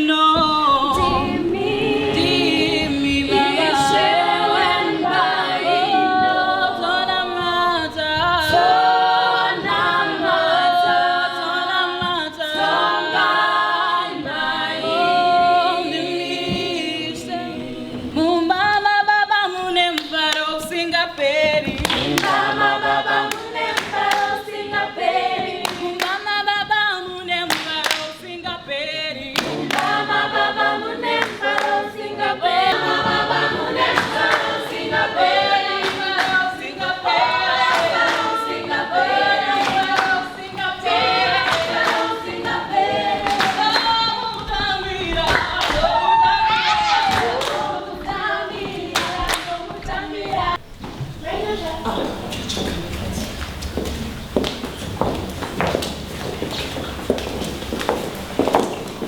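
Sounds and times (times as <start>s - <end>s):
choir singing in harmony: 0.0s - 59.0s
hand claps: 20.0s - 22.7s, 23.3s - 24.6s, 25.4s - 26.4s, 27.4s - 28.3s, 29.4s - 30.2s, 31.2s - 31.8s, 33.6s - 36.7s, 37.6s - 44.4s, 45.2s - 46.0s, 47.1s - 47.8s, 48.6s - 49.6s.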